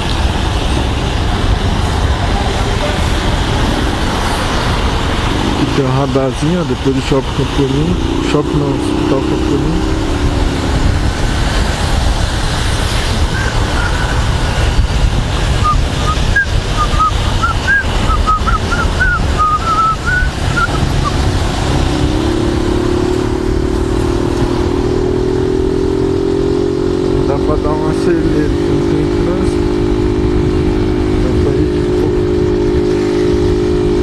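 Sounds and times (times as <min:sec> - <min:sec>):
wind on helmet microphone: 0:09.0 - 0:26.2, 0:26.8 - 0:34.0
short high chirps: 0:15.6 - 0:21.2.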